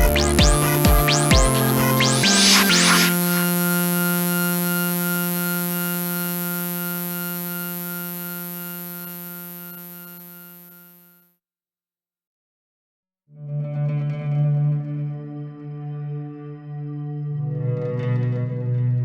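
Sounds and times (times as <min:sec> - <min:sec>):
held synthesizer chord: 0:00.0 - 0:11.2.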